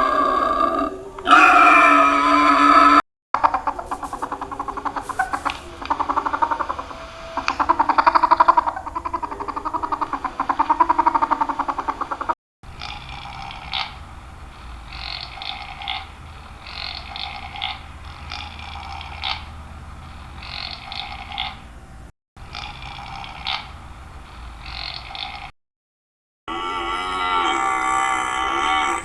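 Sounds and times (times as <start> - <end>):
animal calling: 0.0 - 14.0, 26.5 - 29.0.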